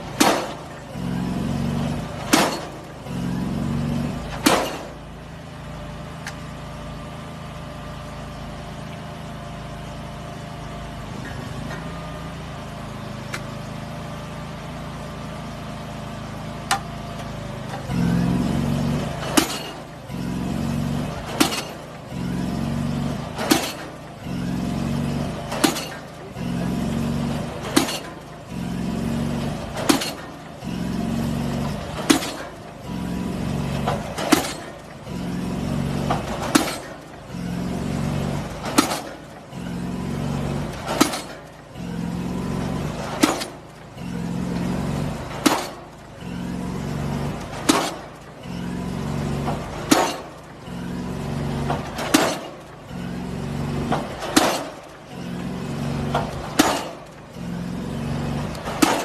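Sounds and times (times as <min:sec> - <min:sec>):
pile hammer blows: 0:00.0 - 0:00.8, 0:02.0 - 0:03.0, 0:04.2 - 0:05.0, 0:19.1 - 0:20.0, 0:21.1 - 0:22.6, 0:23.2 - 0:24.7, 0:25.4 - 0:29.0, 0:29.6 - 0:33.0, 0:33.7 - 0:35.4, 0:36.0 - 0:39.4, 0:40.7 - 0:42.2, 0:42.8 - 0:46.0, 0:47.3 - 0:48.2, 0:49.4 - 0:50.8, 0:51.6 - 0:53.0, 0:53.8 - 0:57.6, 0:58.3 - 0:59.0
steady engine hum: 0:00.0 - 0:59.0.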